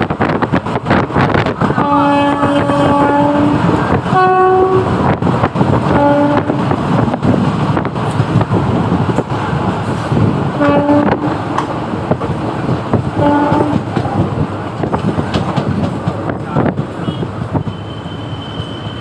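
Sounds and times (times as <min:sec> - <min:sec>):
moving train rumble and clatter: 0:00.0 - 0:19.0
locomotive horn blasts: 0:01.8 - 0:05.0, 0:05.9 - 0:06.7, 0:10.6 - 0:11.4, 0:13.2 - 0:13.8.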